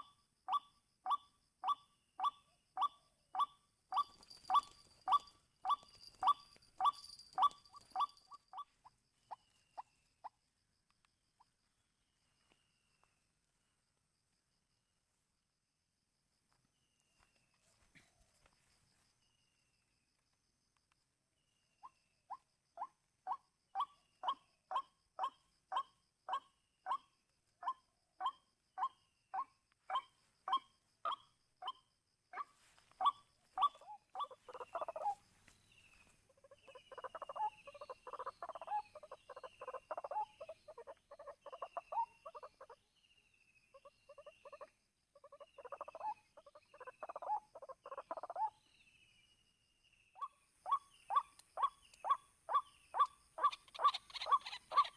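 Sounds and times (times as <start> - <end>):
bird calling kwak notes: 0.0 - 10.2, 36.3 - 42.8, 50.2 - 54.9
bird fast chattering: 3.4 - 9.9, 33.0 - 35.2, 36.4 - 42.8, 51.1 - 54.9.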